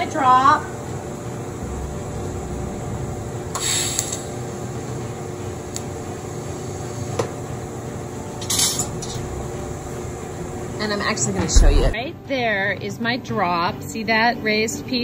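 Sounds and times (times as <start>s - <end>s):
welding machine hum: 0.0s - 12.0s
welding arc hiss: 3.5s - 4.8s, 5.5s - 7.4s.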